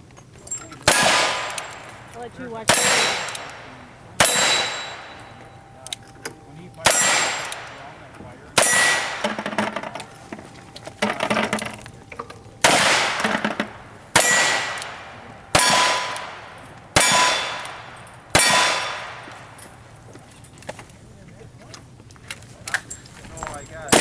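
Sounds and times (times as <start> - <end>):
steel target clanging: 0.3 - 20.7, 22.7 - 24.0
gunshots: 0.8 - 5.5, 6.8 - 10.2, 12.6 - 19.6.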